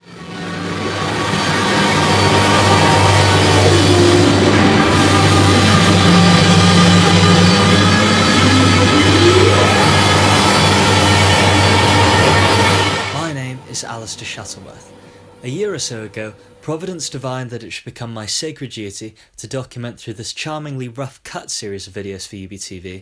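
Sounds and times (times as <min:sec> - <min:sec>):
distorted grunge rock: 0:00.0 - 0:16.8
held tone sliding in pitch: 0:00.0 - 0:17.0.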